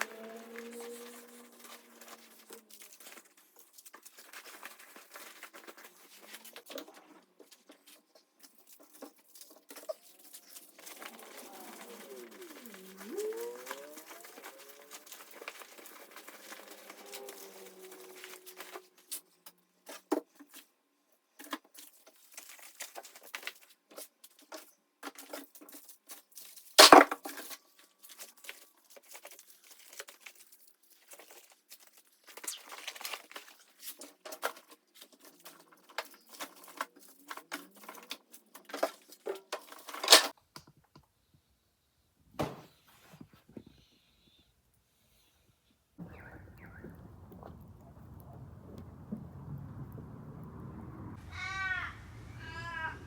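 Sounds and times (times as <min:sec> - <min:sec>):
plastic packaging crinkling: 0:00.0 - 0:19.4, 0:25.2 - 0:40.4.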